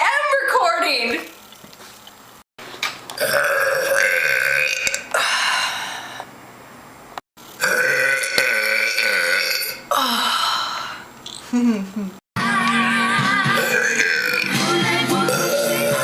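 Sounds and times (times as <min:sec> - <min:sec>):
woman burping: 0:03.2 - 0:05.3, 0:13.6 - 0:14.6, 0:15.3 - 0:16.0.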